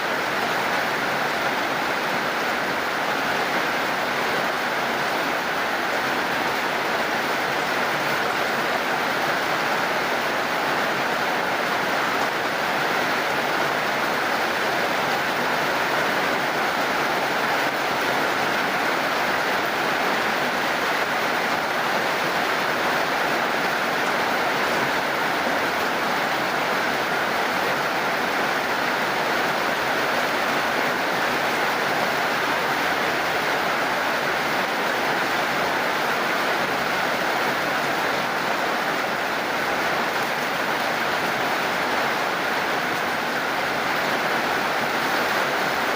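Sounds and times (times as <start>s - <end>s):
heavy rain falling: 0.0s - 45.9s.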